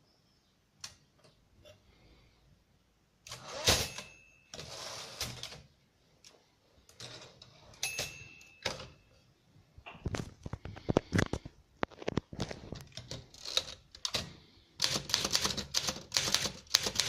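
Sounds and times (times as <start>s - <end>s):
typewriter carriage rasping: 13.0s - 17.0s.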